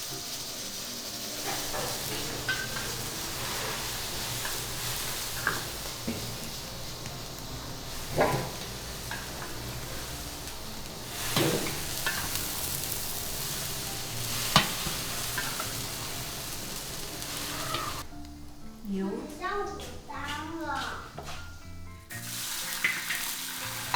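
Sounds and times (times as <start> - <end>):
food sizzling in a pan: 0.0 - 23.9
utensil knocking against pan: 8.0 - 10.0, 11.2 - 12.5, 14.5 - 15.8.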